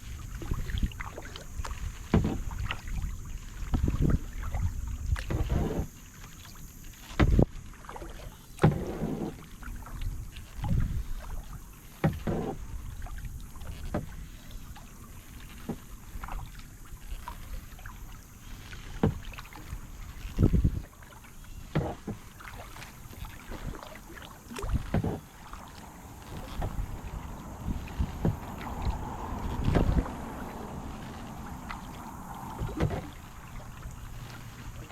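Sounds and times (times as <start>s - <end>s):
wind on microphone: 0.0s - 5.8s, 9.8s - 11.5s, 19.1s - 21.0s, 23.2s - 34.9s
paddle splashing in water: 0.0s - 34.9s
dripping water: 22.4s - 34.9s.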